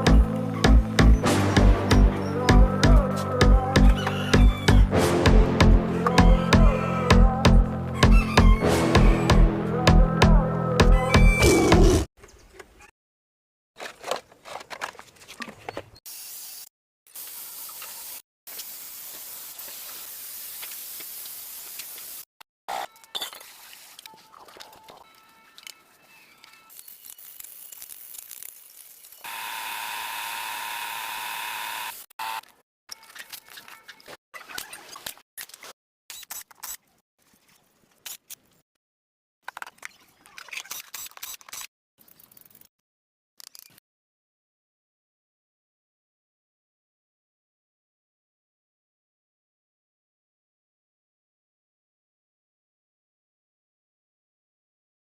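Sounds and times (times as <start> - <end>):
scraping and clicking handling noises: 13.8 - 15.9.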